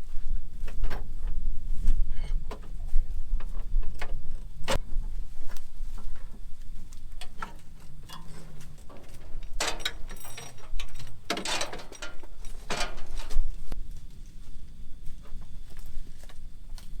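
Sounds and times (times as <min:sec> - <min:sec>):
metallic clicks and ticks: 0:07.2 - 0:13.4.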